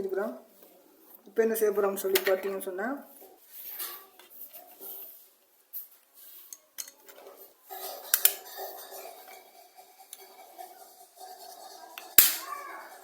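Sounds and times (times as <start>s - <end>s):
metal tools and plastic parts clicking: 6.5s - 7.3s.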